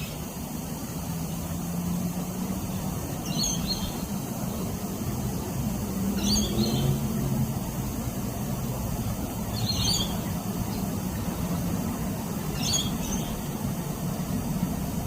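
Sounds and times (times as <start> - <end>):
low engine hum: 0.0 - 15.0
bird chirping: 2.7 - 5.5, 6.1 - 7.2, 9.1 - 13.6.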